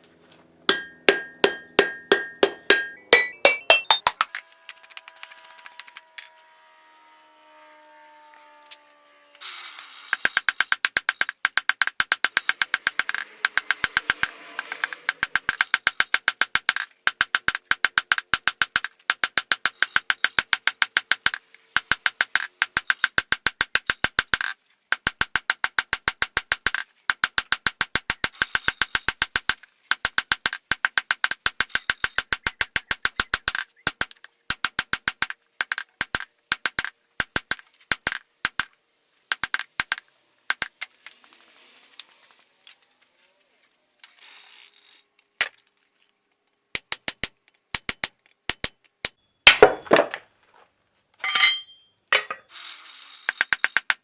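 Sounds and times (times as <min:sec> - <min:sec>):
hammer blows on steel anvil: 0:00.7 - 0:04.4.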